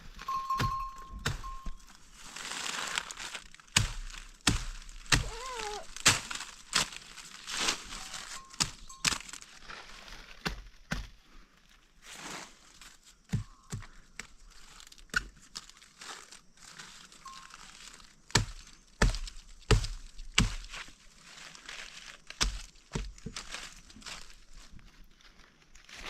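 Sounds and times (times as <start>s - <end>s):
rustling and crinkling: 0.0s - 26.0s
sharp knocks and thuds: 0.3s - 1.8s, 3.7s - 7.0s, 8.4s - 9.3s, 10.4s - 11.2s, 13.3s - 14.3s, 18.3s - 20.7s, 22.3s - 23.5s.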